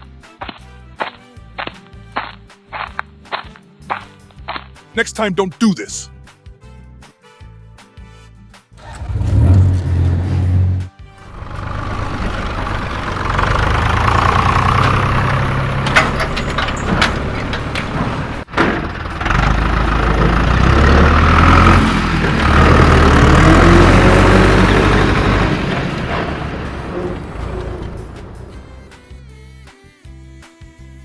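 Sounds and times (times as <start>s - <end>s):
heavy vehicle engine running: 8.8s - 29.2s.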